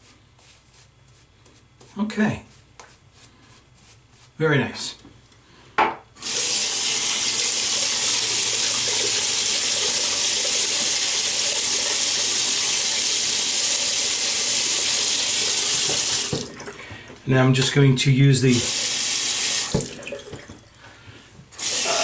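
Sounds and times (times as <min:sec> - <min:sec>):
water running from sink tap: 0:06.2 - 0:17.0, 0:18.5 - 0:20.8, 0:21.6 - 0:22.0.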